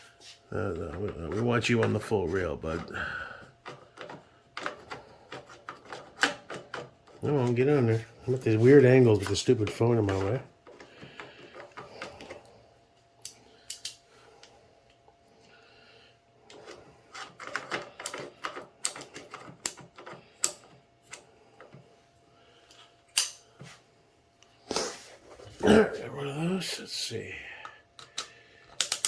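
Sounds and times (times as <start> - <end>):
metal clicks and rattles: 28.0 - 29.0.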